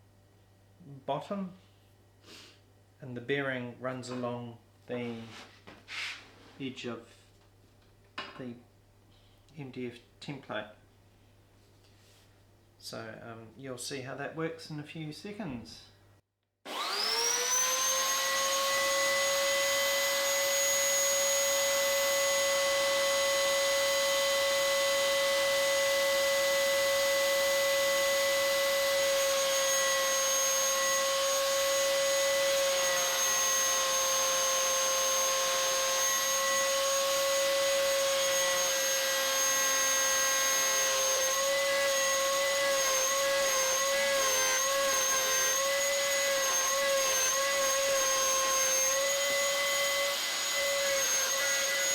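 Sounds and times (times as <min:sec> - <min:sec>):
router high whine: 0:16.7 - 0:51.9.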